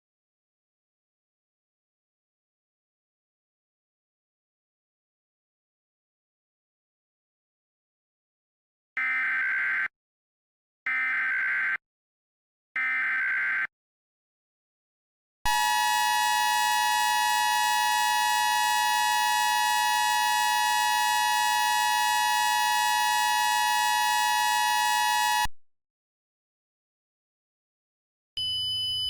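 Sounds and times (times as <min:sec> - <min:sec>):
two-tone alarm: 0:09.0 - 0:09.9, 0:10.9 - 0:11.8, 0:12.8 - 0:13.7, 0:15.5 - 0:25.5, 0:28.4 - 0:29.0.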